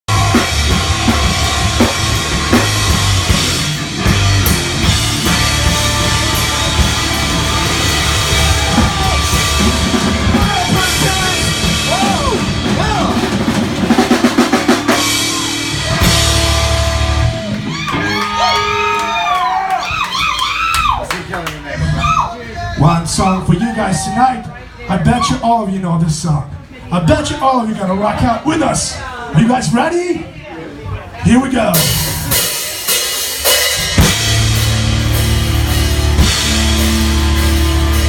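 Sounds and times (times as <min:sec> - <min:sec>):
drum kit: 0:00.0 - 0:21.0, 0:31.7 - 0:38.0
electric guitar bending: 0:00.1 - 0:19.1
live rock band playing: 0:00.1 - 0:20.6, 0:31.7 - 0:38.0.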